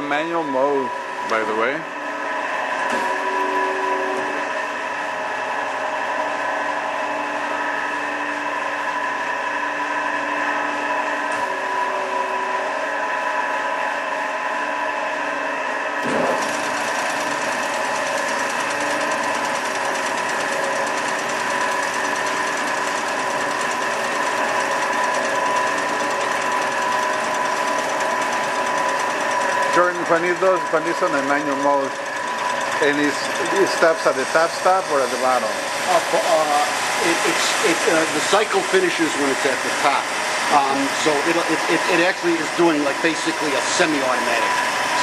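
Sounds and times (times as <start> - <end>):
band saw machine hum: 16.0 - 45.0.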